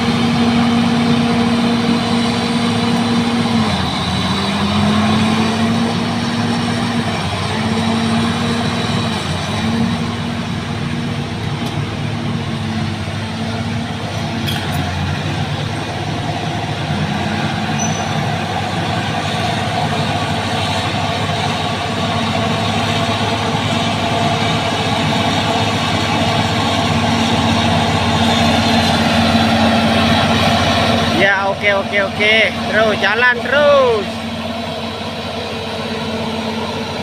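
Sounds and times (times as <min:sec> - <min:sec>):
heavy diesel engine running: 0:00.0 - 0:37.0.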